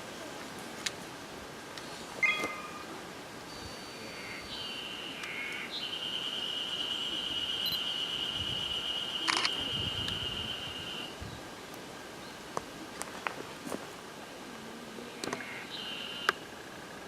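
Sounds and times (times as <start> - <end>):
high steady tone: 2.2 - 3.0
camera shutter click: 9.3 - 9.6.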